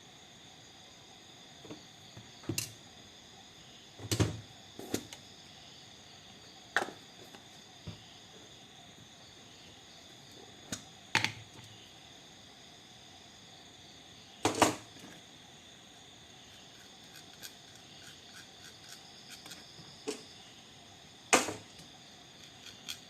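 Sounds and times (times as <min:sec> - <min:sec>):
small hard objects clicking: 0:22.4 - 0:23.0.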